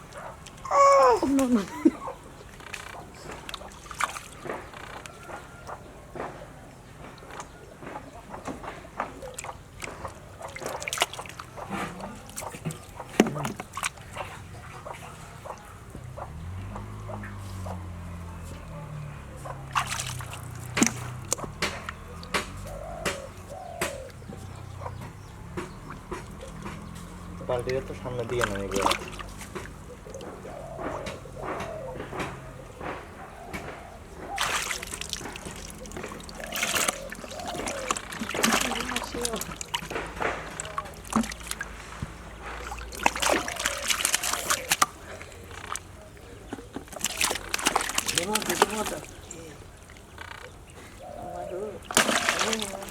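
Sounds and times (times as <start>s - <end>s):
rising and falling calls: 0.6s - 2.2s
sharp knocks and splats: 2.4s - 5.6s, 7.0s - 50.4s, 51.8s - 52.9s.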